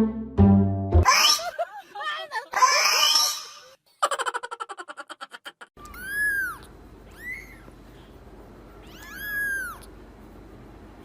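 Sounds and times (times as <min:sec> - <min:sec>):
cat meowing: 0:05.8 - 0:07.7, 0:08.8 - 0:09.9.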